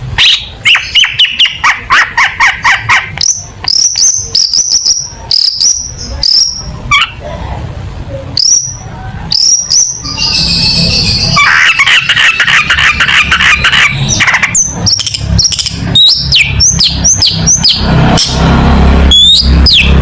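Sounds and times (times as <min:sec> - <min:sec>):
bird scratchy chattering: 0:00.2 - 0:07.2, 0:08.4 - 0:20.0.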